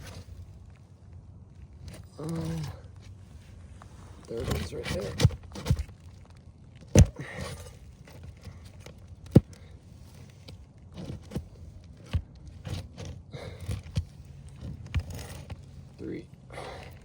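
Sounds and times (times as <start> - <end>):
pry tool knocking and scraping: 4.4 - 6.0, 10.4 - 16.0.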